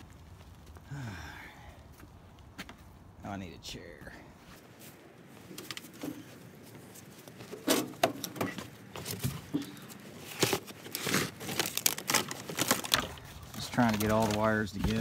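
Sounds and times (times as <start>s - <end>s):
cables rustling and clicking: 4.7s - 15.0s.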